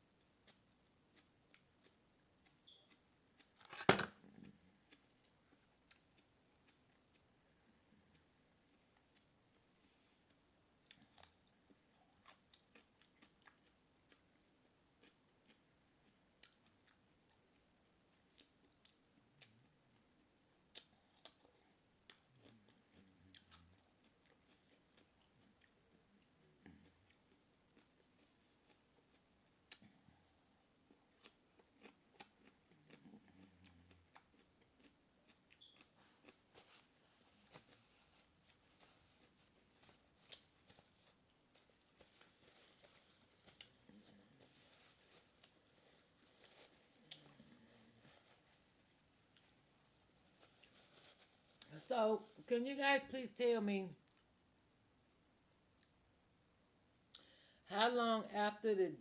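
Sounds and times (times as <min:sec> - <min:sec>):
chewing: 0:08.1 - 0:51.8
lip smacks and mouth clicks: 0:20.7 - 0:21.5.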